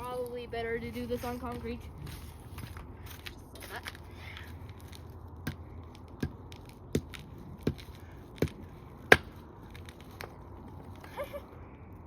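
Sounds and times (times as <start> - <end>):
sharp blows on plug on concrete: 5.4 - 9.4.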